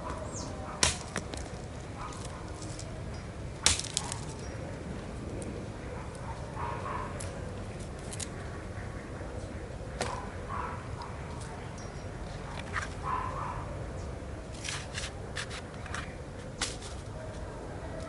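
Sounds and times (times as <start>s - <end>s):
machete chopping sugarcane: 0.8s - 1.5s, 3.6s - 4.2s, 16.6s - 16.9s.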